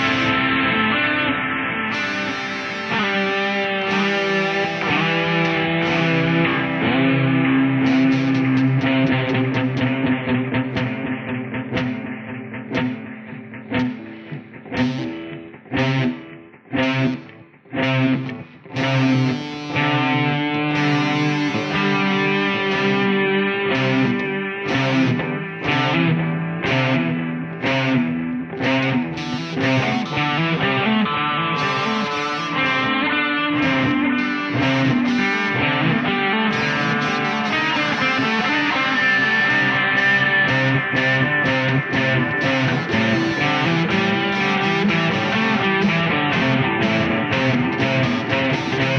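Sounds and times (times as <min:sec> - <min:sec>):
guitar strumming chords: 0:00.0 - 0:48.9.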